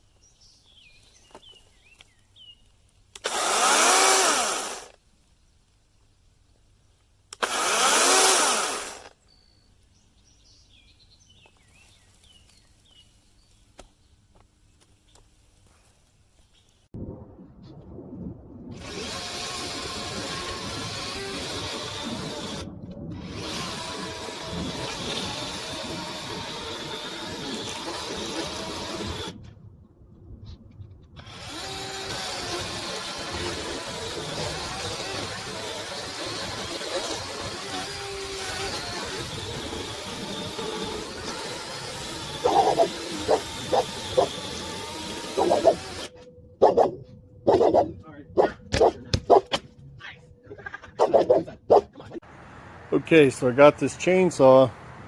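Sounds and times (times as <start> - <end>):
chainsaw motor revving: 3.2 - 5.0, 7.4 - 9.2, 18.8 - 29.4, 31.2 - 46.1.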